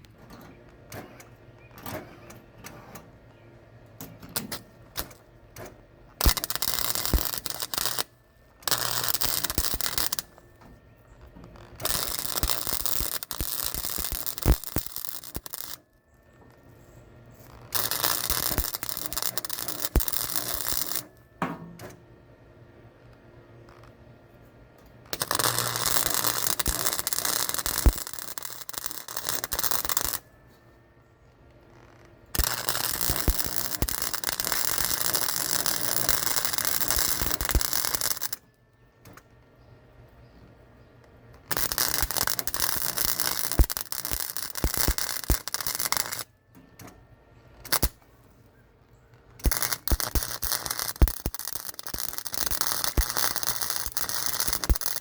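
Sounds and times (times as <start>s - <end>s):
welding arc crackling: 4.3s - 5.2s, 6.2s - 10.4s, 11.5s - 15.8s, 17.4s - 21.2s, 25.1s - 30.2s, 32.4s - 38.4s, 41.5s - 46.3s, 47.6s - 48.0s, 49.4s - 55.0s.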